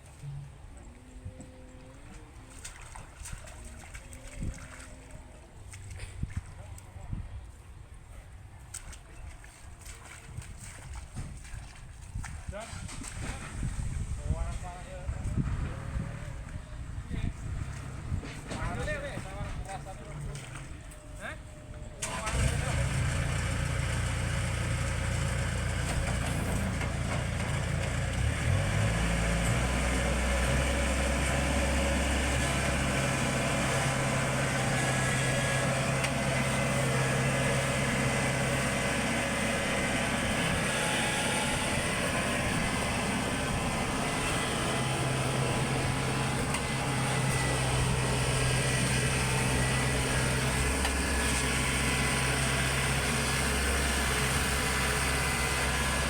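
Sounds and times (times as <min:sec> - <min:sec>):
combine harvester engine revving: 0:22.0 - 0:56.0.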